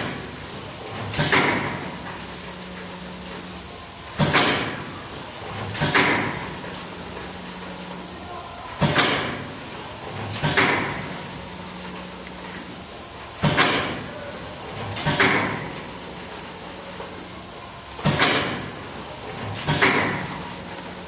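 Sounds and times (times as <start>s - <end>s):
machine running noise: 0.0s - 21.0s
packaging machine clacks: 19.3s - 20.9s.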